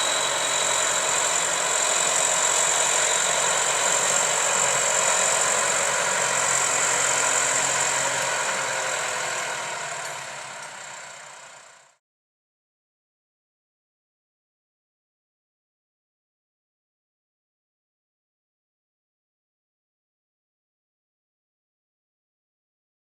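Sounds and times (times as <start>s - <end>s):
tractor diesel engine running: 0.0s - 12.0s.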